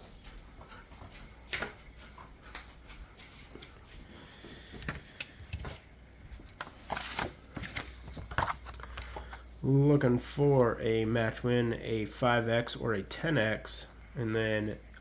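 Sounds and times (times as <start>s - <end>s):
paper tickets rustling and scraping: 3.3s - 9.8s.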